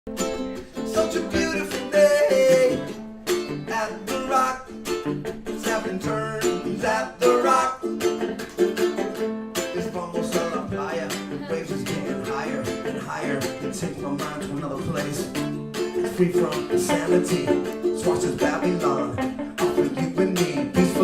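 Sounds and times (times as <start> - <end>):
acoustic guitar strumming and picking: 0.1 - 21.0.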